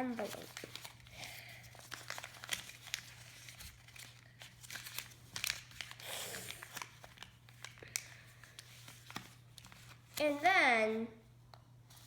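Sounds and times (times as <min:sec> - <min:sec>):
paper rustle: 0:00.0 - 0:06.0, 0:06.6 - 0:10.4
paper crinkling and folding: 0:00.0 - 0:10.4.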